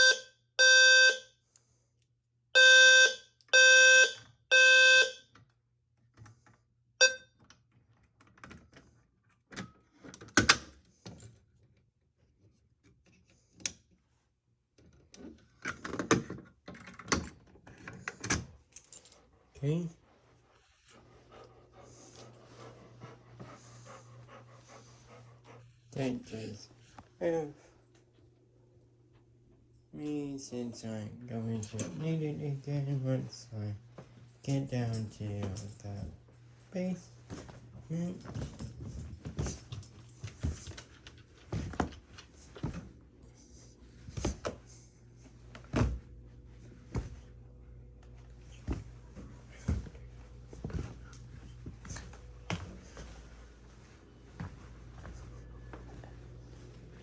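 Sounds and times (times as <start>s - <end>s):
low steady hum: 16.6s - 57.0s
faint rhythmic panting: 18.8s - 27.9s.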